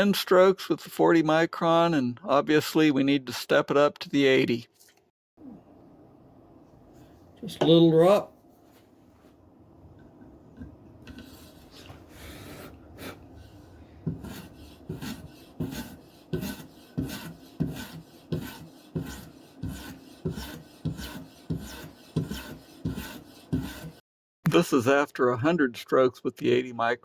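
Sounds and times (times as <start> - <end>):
knife rubbing on strop: 11.1 - 24.0.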